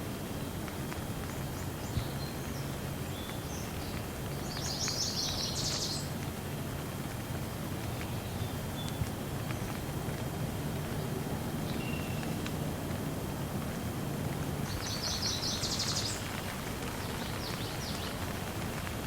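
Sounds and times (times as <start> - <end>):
light rain hissing: 0.0 - 19.0
faint drip ticks: 0.1 - 19.0
bird chirping: 1.8 - 6.2, 11.7 - 12.4, 14.7 - 18.2.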